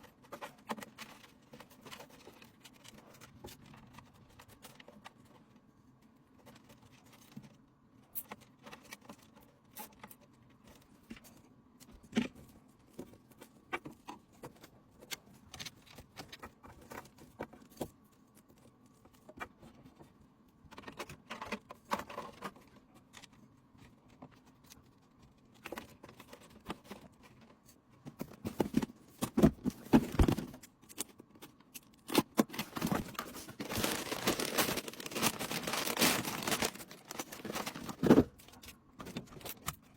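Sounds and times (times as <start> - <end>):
packaging rustling and crinkling: 32.0 - 39.8.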